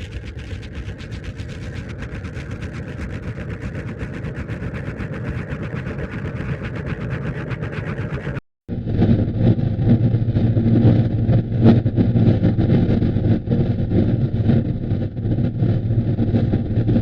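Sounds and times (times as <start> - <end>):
pulsing engine-like hum: 0.0 - 17.0.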